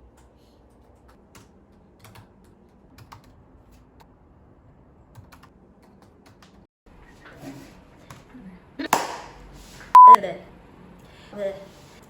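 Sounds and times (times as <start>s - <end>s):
computer keyboard typing: 0.9s - 2.3s, 3.0s - 3.4s.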